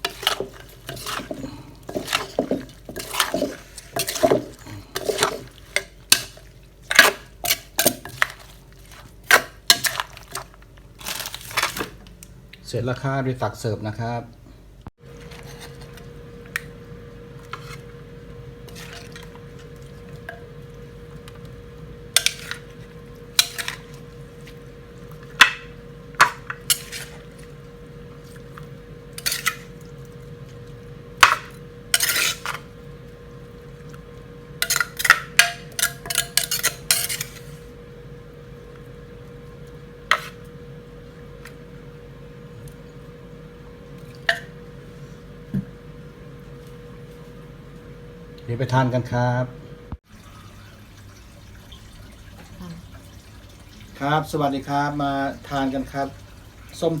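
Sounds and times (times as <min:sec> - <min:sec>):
faint steady hum: 0:00.0 - 0:57.0
utensils clinking on plate: 0:34.6 - 0:37.6.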